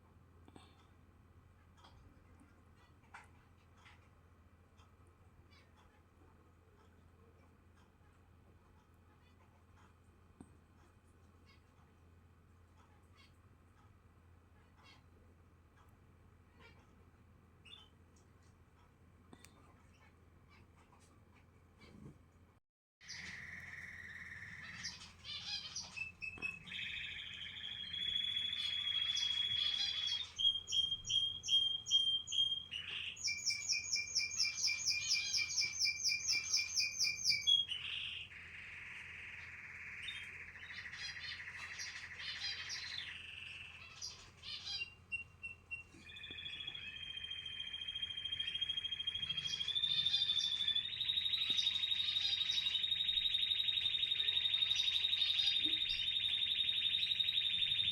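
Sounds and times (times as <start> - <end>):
canary trilling: 14.6 - 15.2, 23.0 - 57.9.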